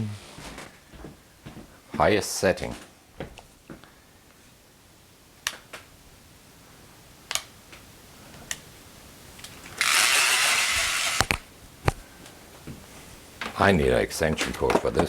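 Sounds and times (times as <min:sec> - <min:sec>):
hairdryer blowing: 0:09.8 - 0:11.4.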